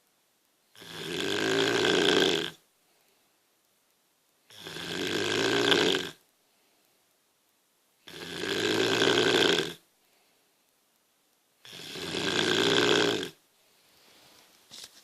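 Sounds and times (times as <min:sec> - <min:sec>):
woman snoring: 0:00.7 - 0:02.6, 0:04.5 - 0:06.2, 0:08.0 - 0:09.8, 0:11.6 - 0:13.4
quiet breathing: 0:02.6 - 0:03.7, 0:06.2 - 0:07.4, 0:09.8 - 0:11.0, 0:11.6 - 0:14.7.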